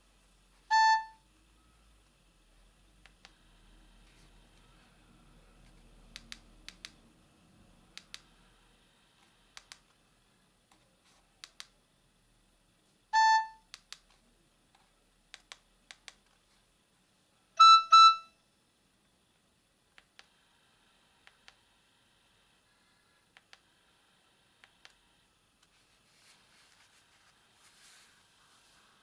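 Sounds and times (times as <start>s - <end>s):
short electronic beep: 17.6s - 18.3s.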